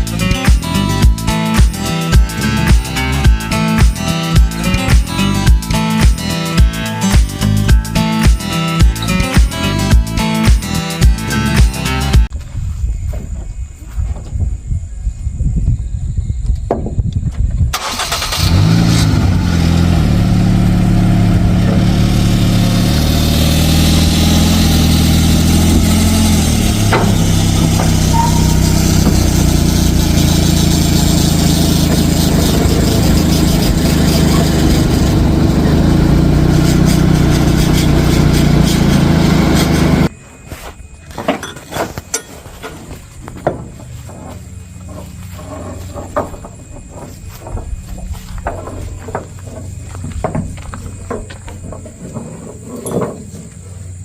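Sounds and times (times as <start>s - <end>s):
vehicle engine starting and running: 17.7s - 40.1s, 43.5s - 54.0s.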